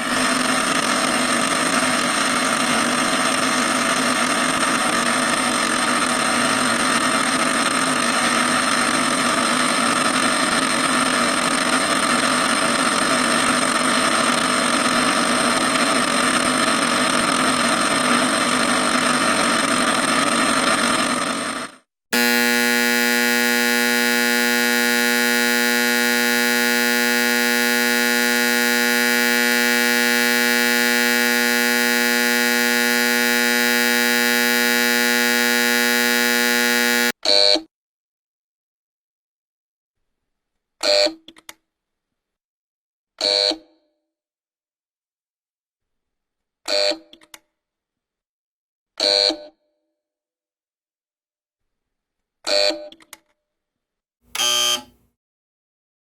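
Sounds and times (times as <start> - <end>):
harsh raspy electric buzzer: 22.2 - 37.2, 54.3 - 55.0
steady pitched buzzer drone: 22.2 - 37.2, 54.4 - 55.0.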